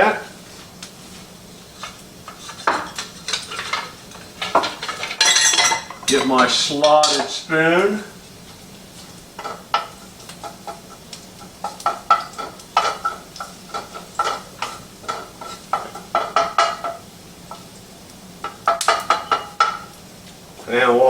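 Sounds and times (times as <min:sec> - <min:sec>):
oil sizzling: 0:00.0 - 0:21.0
metal spoon clinking in pan: 0:02.6 - 0:07.4.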